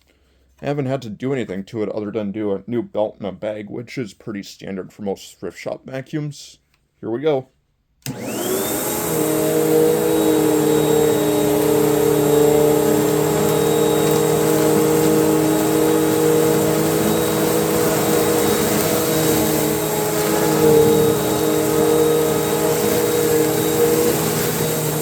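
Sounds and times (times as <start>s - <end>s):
vacuum cleaner motor running: 8.1s - 25.0s.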